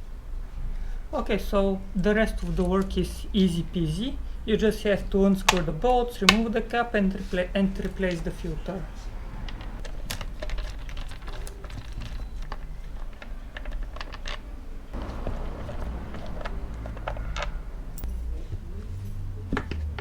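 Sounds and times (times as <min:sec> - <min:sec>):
hand tools clicking and tapping: 0:05.4 - 0:06.7, 0:07.8 - 0:20.0.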